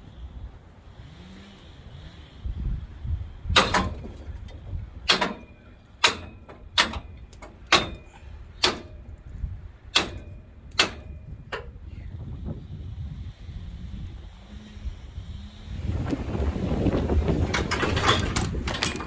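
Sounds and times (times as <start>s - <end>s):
metal parts being struck: 3.5s - 4.3s, 5.0s - 9.1s, 9.9s - 11.6s.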